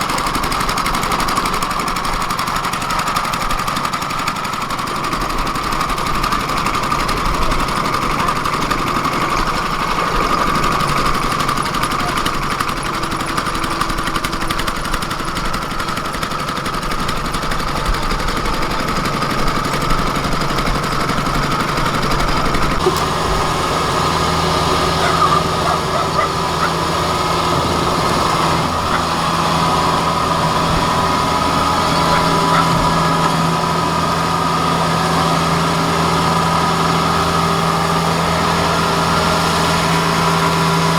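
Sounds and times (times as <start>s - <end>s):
engine running steadily: 0.0s - 40.9s
deeper engine note: 22.8s - 40.6s.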